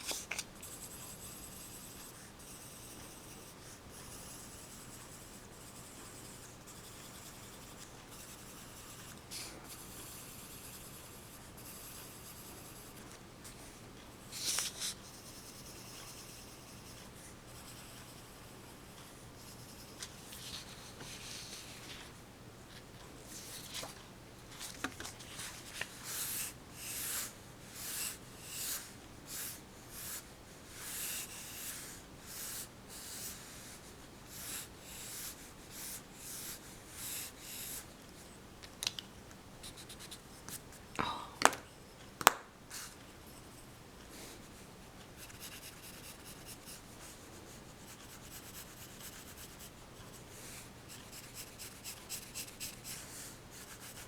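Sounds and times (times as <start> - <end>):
pencil drawing on paper: 0.6 - 13.1, 14.4 - 21.9, 25.8 - 37.9, 45.2 - 54.0.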